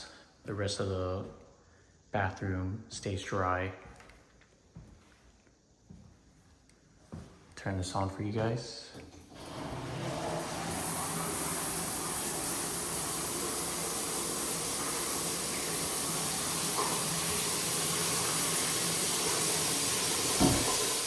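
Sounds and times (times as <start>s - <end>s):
shower water spraying: 9.4s - 21.0s.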